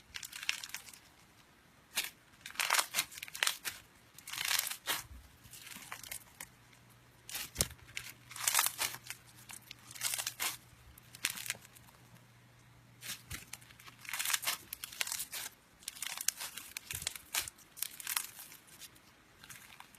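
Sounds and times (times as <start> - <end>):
slime crackling and popping: 0.0 - 1.2, 1.9 - 6.5, 7.2 - 12.0, 13.0 - 19.9.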